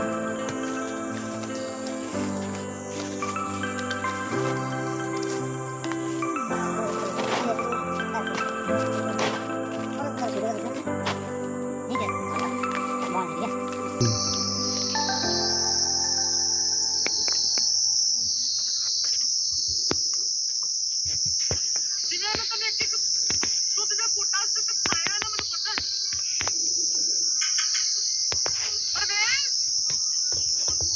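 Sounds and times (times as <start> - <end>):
insect chorus shrill trill: 0.0 - 9.6, 11.3 - 30.9
bird whistling: 13.6 - 18.9.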